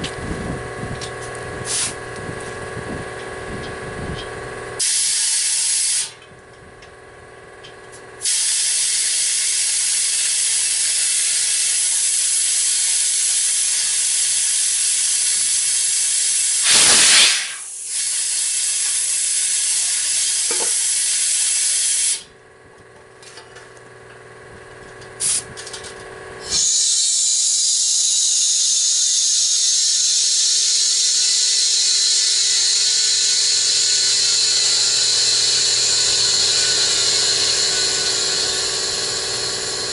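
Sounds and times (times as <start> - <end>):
compressed air hissing: 1.6 - 2.0, 4.8 - 6.2, 8.2 - 22.3, 25.2 - 25.5, 26.4 - 39.9.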